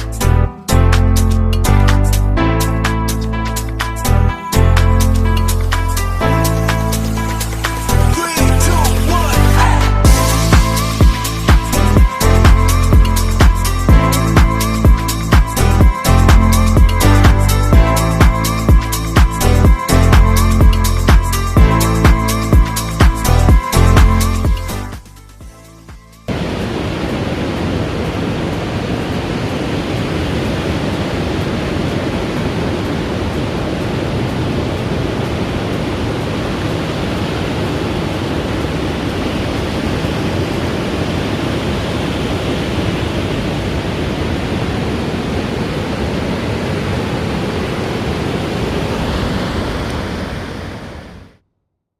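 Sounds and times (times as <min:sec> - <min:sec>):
sea surf: 0:03.5 - 0:24.4, 0:26.3 - 0:51.4
wind: 0:26.3 - 0:51.4.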